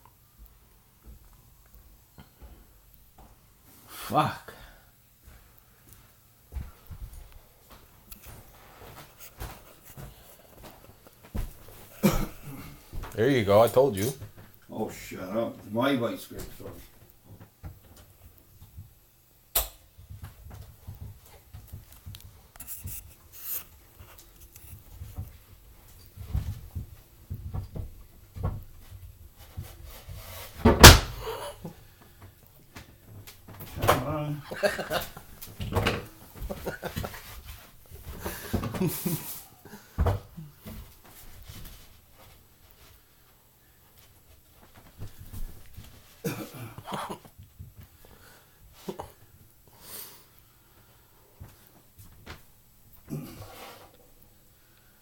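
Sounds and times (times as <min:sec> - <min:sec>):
person coughing: 0:11.9 - 0:12.8, 0:31.2 - 0:31.8, 0:46.2 - 0:47.3, 0:53.1 - 0:53.5.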